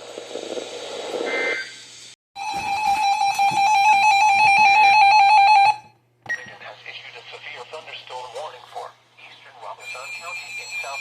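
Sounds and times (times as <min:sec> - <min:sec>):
emergency alert data noise: 0:09.6 - 0:11.0
two-tone attention signal: 0:09.8 - 0:11.0.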